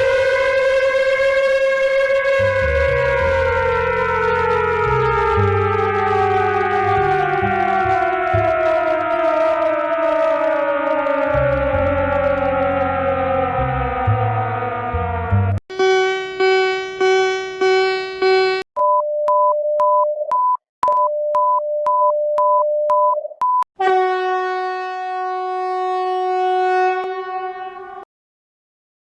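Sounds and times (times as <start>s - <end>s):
long buzzy tone: 11.2s - 18.6s, 23.8s - 28.0s
buzzy alert beeps: 15.7s - 18.6s
high pips over steady tone: 15.7s - 18.7s.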